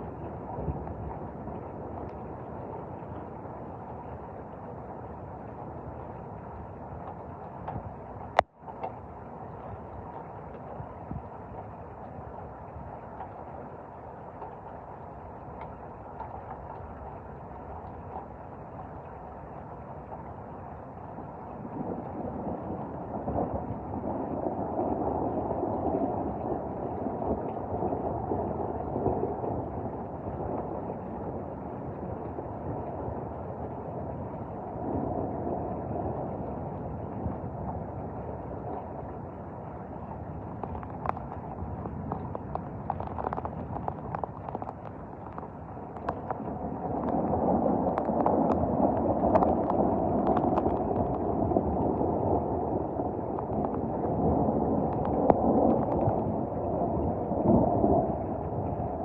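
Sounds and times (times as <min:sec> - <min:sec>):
heavy rain: 0:00.0 - 0:59.0
wind: 0:00.0 - 0:59.0
thunder rumbling: 0:21.2 - 0:59.0.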